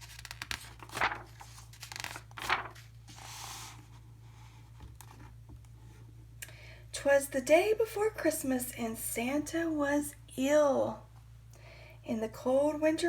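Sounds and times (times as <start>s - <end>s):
paper page turning: 0.0s - 4.0s
steady low hum: 0.0s - 13.0s.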